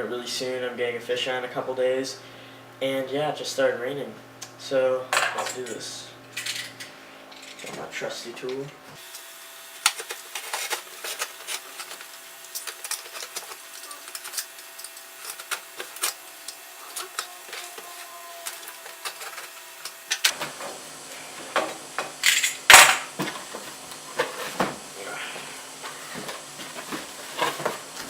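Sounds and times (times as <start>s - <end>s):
cardboard rustling: 23.2s - 28.0s.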